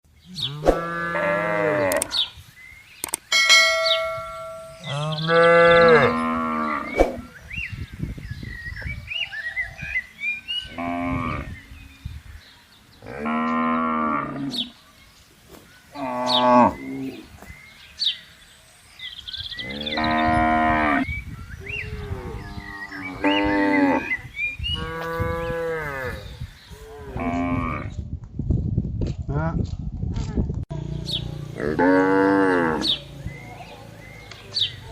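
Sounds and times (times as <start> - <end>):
cattle mooing: 31.6 - 33.0.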